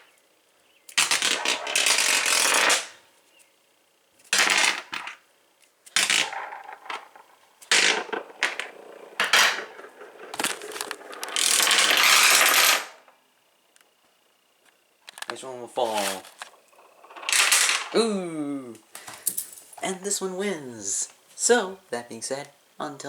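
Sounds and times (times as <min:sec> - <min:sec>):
padlocks rattling and scraping: 0:01.0 - 0:02.9, 0:05.9 - 0:13.2, 0:16.2 - 0:18.0.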